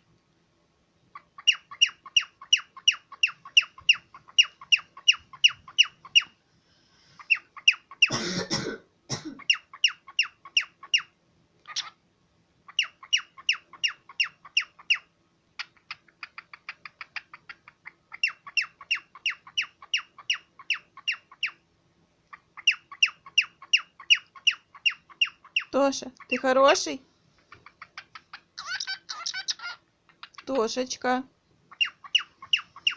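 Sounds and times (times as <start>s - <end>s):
cockatiel shrill calls: 1.4s - 6.3s, 27.6s - 30.4s, 31.7s - 32.9s.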